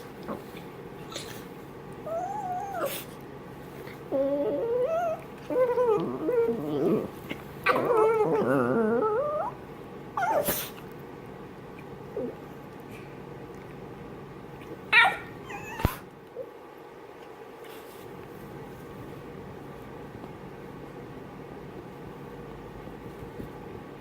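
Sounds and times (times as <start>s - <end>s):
dogs growling while playing: 3.9s - 9.6s.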